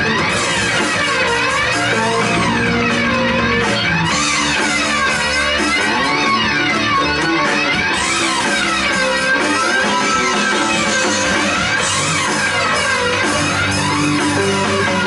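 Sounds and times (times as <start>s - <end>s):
bass guitar: 0.0s - 15.0s
electric guitar with sweeping pitch: 0.0s - 15.0s
drums playing: 1.7s - 6.4s.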